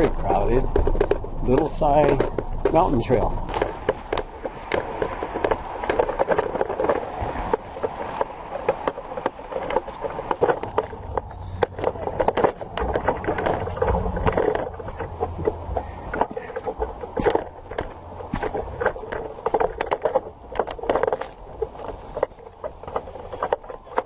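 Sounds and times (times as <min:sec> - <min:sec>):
footsteps on dirt trail: 0:00.0 - 0:24.0.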